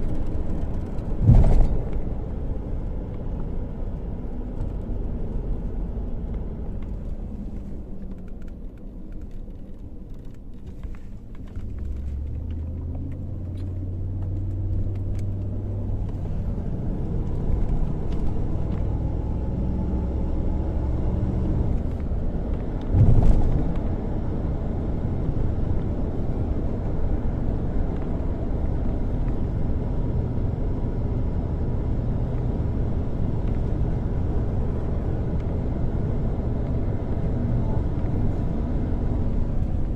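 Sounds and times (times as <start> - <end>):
vehicle engine rumble: 0.0 - 39.9
loud thump: 1.2 - 2.0.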